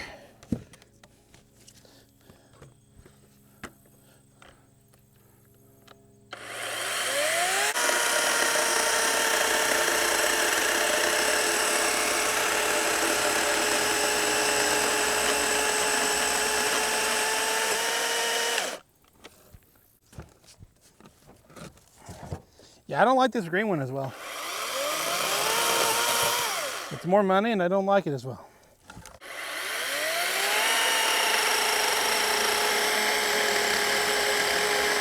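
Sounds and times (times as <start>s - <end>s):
chainsaw cutting through log: 6.3s - 18.8s, 24.0s - 27.1s, 29.2s - 35.0s.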